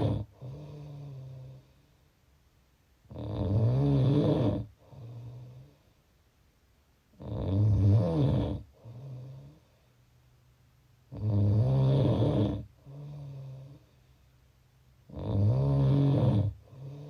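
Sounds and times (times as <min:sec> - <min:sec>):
loud rasping snores: 0:00.0 - 0:01.6, 0:03.1 - 0:05.8, 0:07.2 - 0:09.6, 0:11.1 - 0:13.8, 0:15.1 - 0:17.0
quiet breath sound: 0:00.0 - 0:02.4, 0:04.5 - 0:06.3, 0:08.5 - 0:11.2, 0:12.2 - 0:15.2, 0:16.0 - 0:17.0.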